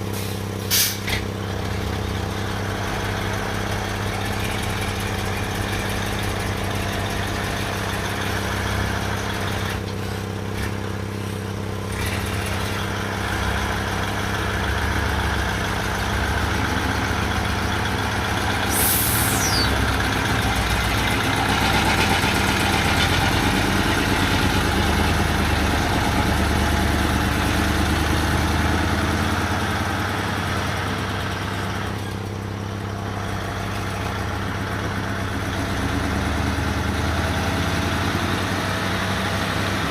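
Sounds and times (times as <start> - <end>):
heavy machine engine running: 0.0 - 39.9
high falling whistle: 18.7 - 19.9.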